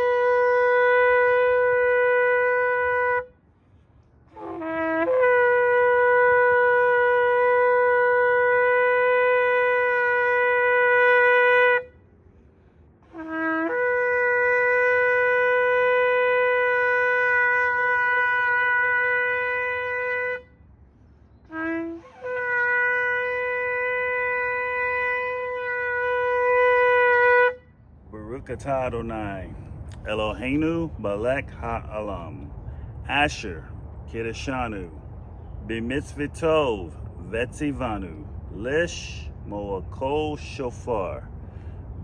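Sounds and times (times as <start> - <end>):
shofar blasts: 0.0 - 3.5, 4.2 - 12.2, 13.0 - 20.7, 21.4 - 34.5.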